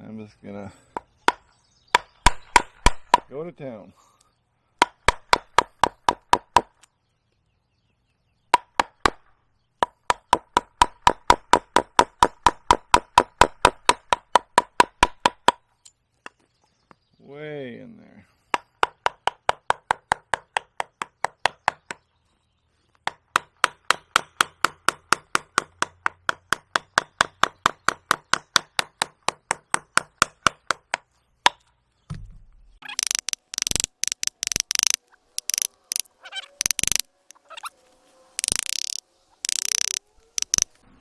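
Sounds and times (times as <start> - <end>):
gouge tapping into wood: 2.0 - 3.3, 4.8 - 6.7, 8.6 - 9.2, 9.8 - 15.6, 32.9 - 37.1, 38.4 - 40.7
harsh scraping cuts: 32.9 - 40.8.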